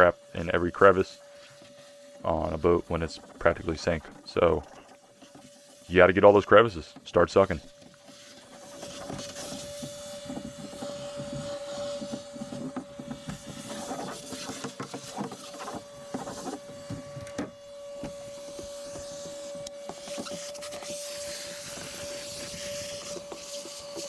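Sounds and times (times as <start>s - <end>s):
debris rattling through a hose: 0.0s - 17.2s
shop vac whine: 0.0s - 24.0s.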